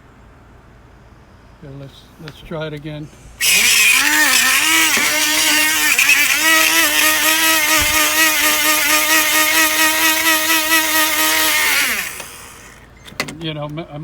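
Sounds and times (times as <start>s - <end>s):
sand hissing: 3.4s - 12.8s
loud steady electric buzz: 3.4s - 12.9s.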